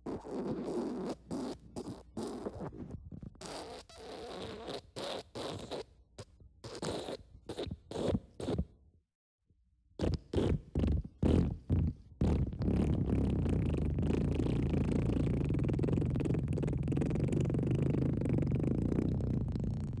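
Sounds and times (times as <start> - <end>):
sputtering fart sound effect: 10.0 - 20.0.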